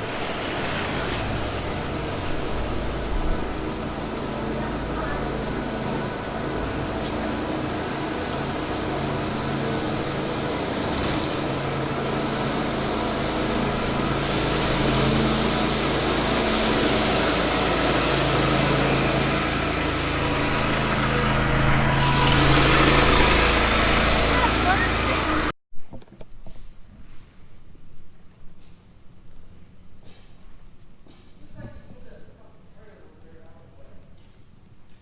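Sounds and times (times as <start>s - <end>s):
engine running steadily: 0.0s - 25.5s.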